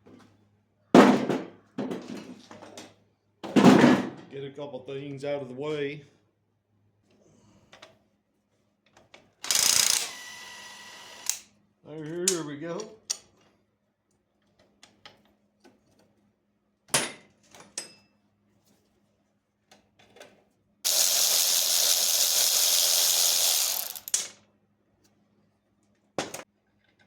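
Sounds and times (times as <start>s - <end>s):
power tool running: 9.4s - 11.4s, 20.9s - 24.3s
tools clicking and knocking on metal: 16.9s - 18.1s.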